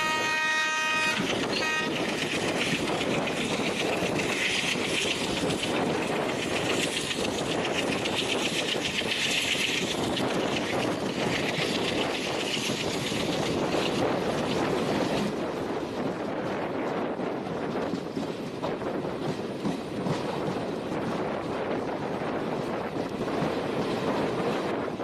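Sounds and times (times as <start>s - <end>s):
train horn: 0.0s - 2.1s
train rumble and clatter: 0.0s - 25.0s.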